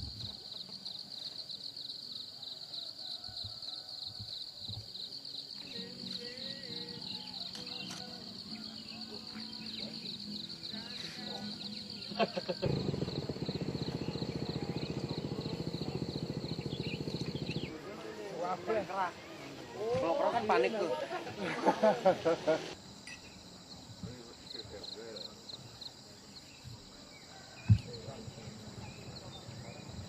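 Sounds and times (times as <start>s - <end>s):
insects chirping: 0.0s - 30.0s
low fast rattling: 12.6s - 17.7s.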